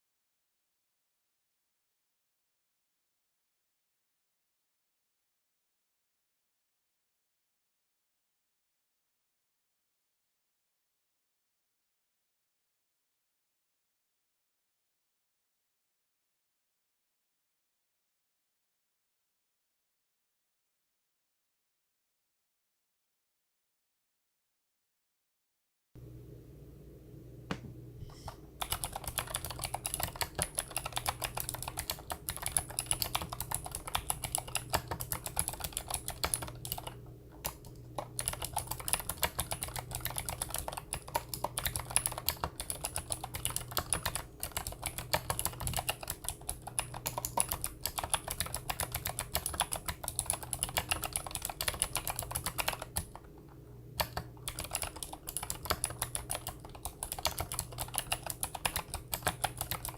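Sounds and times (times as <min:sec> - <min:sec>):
mechanical keyboard typing: 0:28.2 - 0:53.2, 0:54.0 - 0:59.9.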